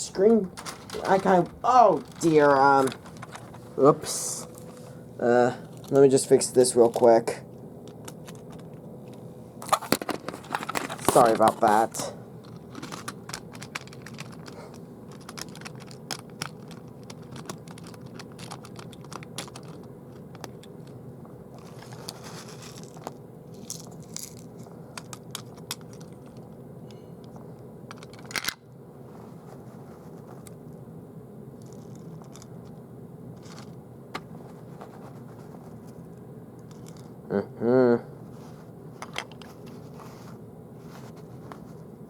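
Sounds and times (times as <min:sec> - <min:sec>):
faint steady hum: 0:00.0 - 0:42.0
model train pieces clattering: 0:00.2 - 0:03.6, 0:09.6 - 0:21.0, 0:27.9 - 0:28.6, 0:33.4 - 0:33.7.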